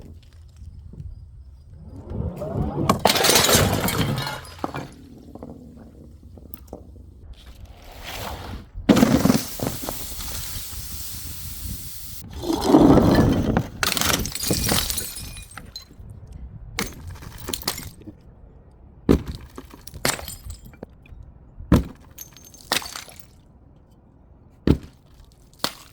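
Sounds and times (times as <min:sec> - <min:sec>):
glass smashing: 0:02.4 - 0:05.6, 0:13.8 - 0:15.9, 0:21.9 - 0:23.4
glass pieces clinking: 0:03.0 - 0:05.6.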